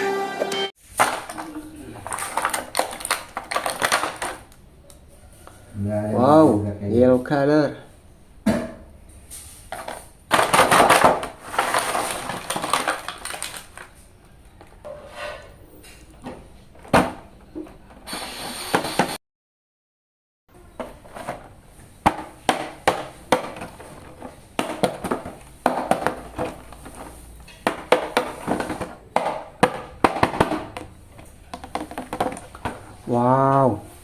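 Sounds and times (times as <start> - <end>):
plastic packaging crinkling: 0.8 - 4.6, 9.9 - 14.1.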